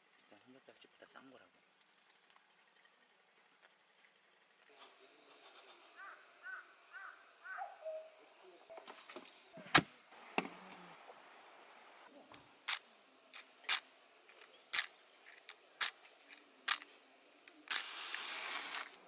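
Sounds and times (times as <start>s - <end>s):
faint outdoor background: 0.0s - 19.0s
bird calling: 4.8s - 9.7s.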